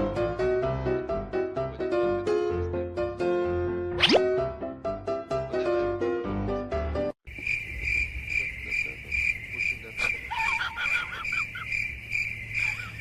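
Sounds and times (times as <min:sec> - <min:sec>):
piano music: 0:00.0 - 0:07.2
crickets chirping: 0:07.2 - 0:13.0.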